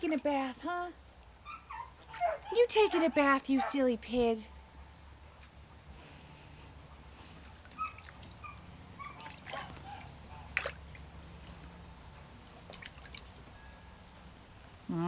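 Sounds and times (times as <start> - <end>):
pig splashing in water: 7.6 - 11.7, 12.5 - 13.5.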